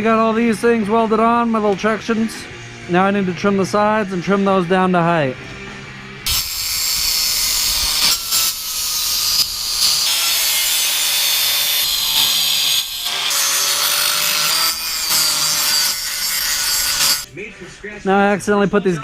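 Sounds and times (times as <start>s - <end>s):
power tool cutting metal: 6.3s - 17.3s.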